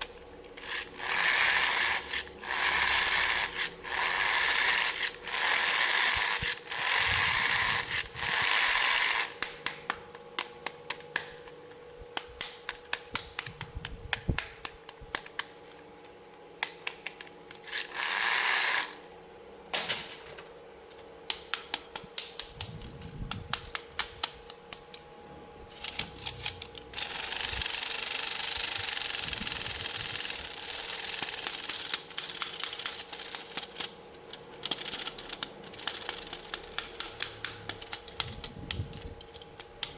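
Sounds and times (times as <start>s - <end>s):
plastic toy pieces clicking: 25.8s - 39.9s.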